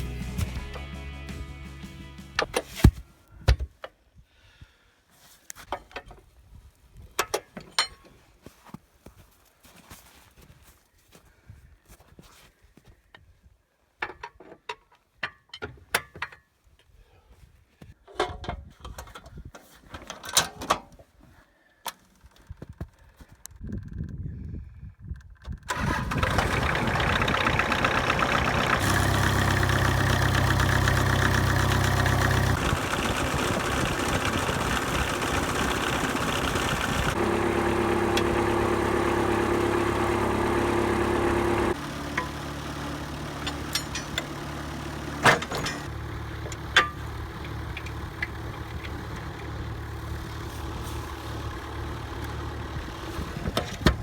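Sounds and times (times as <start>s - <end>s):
engine running: 0.0s - 2.5s, 25.7s - 54.0s.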